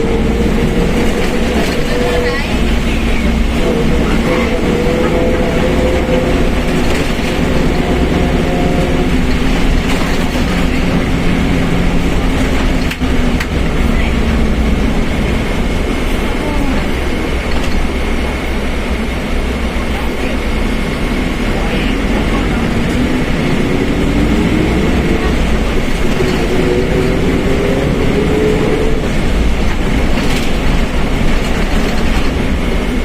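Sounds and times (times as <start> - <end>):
differential whine: 0.0 - 19.6
bus diesel engine drone: 0.0 - 33.0.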